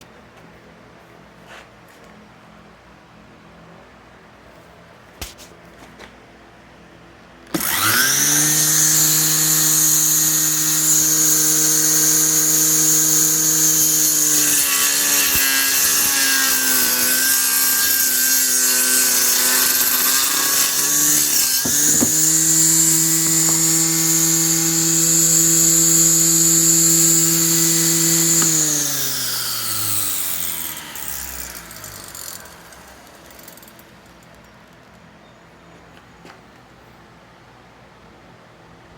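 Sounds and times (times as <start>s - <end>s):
circular saw blade whine: 7.5s - 35.4s.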